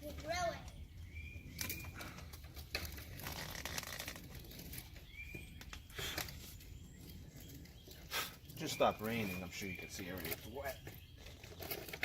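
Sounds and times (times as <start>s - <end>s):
faint bird chirps: 0.1s - 2.3s, 4.6s - 12.0s.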